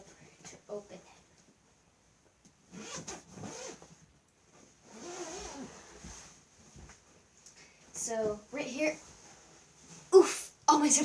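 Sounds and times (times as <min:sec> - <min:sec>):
zipper being pulled open: 0:02.7 - 0:04.0, 0:04.8 - 0:06.4.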